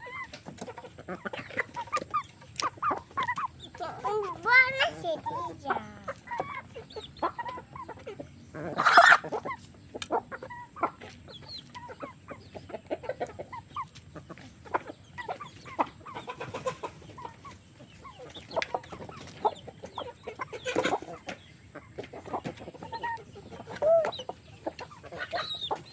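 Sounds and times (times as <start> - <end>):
chickens clucking: 0.0 - 25.9
harsh chicken call bursts: 8.8 - 9.2.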